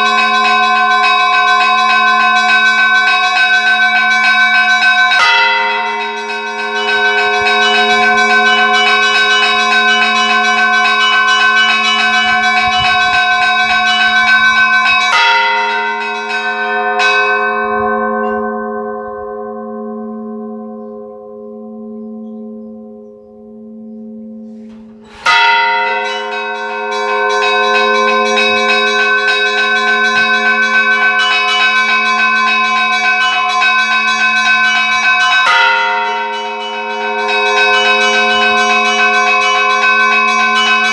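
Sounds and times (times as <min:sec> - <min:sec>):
church bells ringing: 0:00.0 - 0:40.9
deep bell hum: 0:05.2 - 0:33.8.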